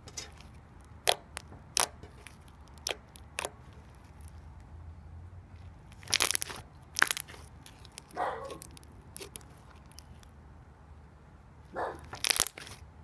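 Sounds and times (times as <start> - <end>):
slime crackling pops: 0.1 - 4.3, 5.9 - 10.2, 12.0 - 12.8
dog barking: 8.1 - 8.6, 11.7 - 12.1.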